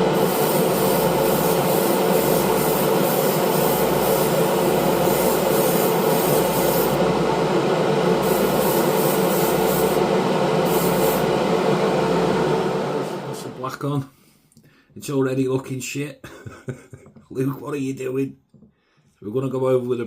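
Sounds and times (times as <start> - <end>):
airbrush spray hissing: 0.0 - 7.1, 7.9 - 11.9
compressor humming: 0.0 - 13.8.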